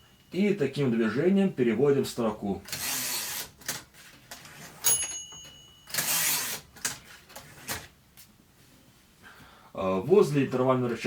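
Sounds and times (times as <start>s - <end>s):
typewriter carriage ratchet sweep: 2.6s - 5.2s, 5.8s - 7.9s
typewriter margin bell: 4.5s - 7.1s.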